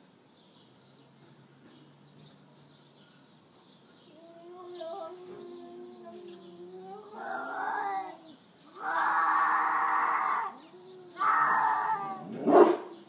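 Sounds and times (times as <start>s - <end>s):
cat yowling: 4.2s - 12.5s.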